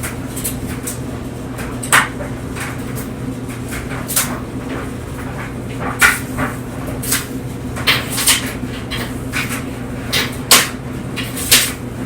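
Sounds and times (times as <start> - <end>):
clothes dryer humming: 0.0 - 12.0
knock inside dryer drum: 1.7 - 2.6.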